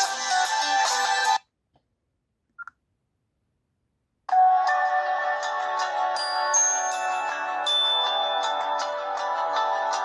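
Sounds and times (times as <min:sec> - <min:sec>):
phone ringtone with mallet notes: 0:06.2 - 0:09.1.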